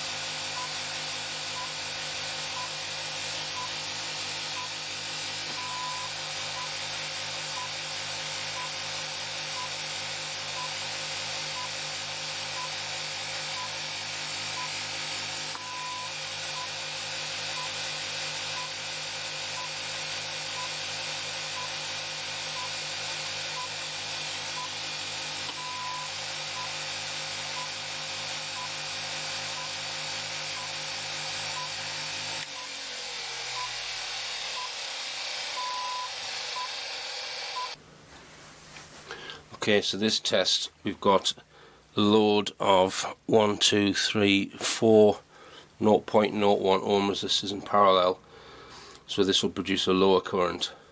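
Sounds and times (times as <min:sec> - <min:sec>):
generator electric hum: 0:00.0 - 0:38.1
longer electronic beep: 0:04.6 - 0:04.8, 0:05.6 - 0:06.8, 0:07.6 - 0:07.8, 0:08.6 - 0:08.8, 0:15.6 - 0:16.7, 0:18.6 - 0:18.8, 0:20.6 - 0:20.8, 0:21.6 - 0:21.8, 0:25.6 - 0:26.8, 0:27.6 - 0:27.8, 0:28.6 - 0:28.8, 0:29.6 - 0:29.8, 0:30.6 - 0:30.8, 0:31.5 - 0:31.8, 0:35.6 - 0:36.7
short electronic beeps: 0:05.6 - 0:06.7, 0:15.6 - 0:16.7, 0:31.6 - 0:31.8, 0:35.6 - 0:36.7.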